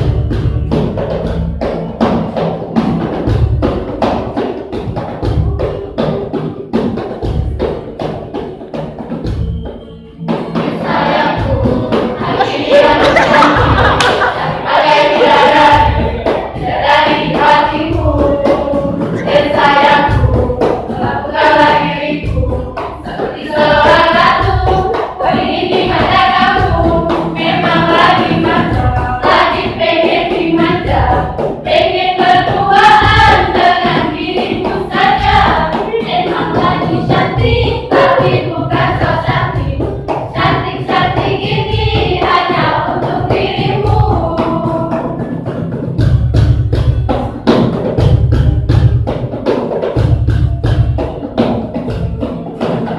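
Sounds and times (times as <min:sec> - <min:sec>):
low thumping beat: 0:00.0 - 0:52.9
choir singing: 0:10.5 - 0:45.2.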